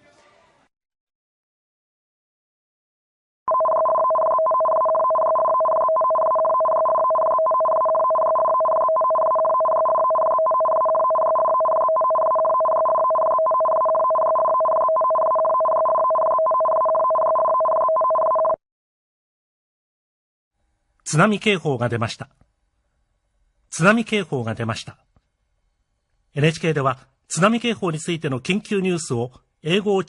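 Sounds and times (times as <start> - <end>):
electronic data tone chattering: 3.5 - 18.6.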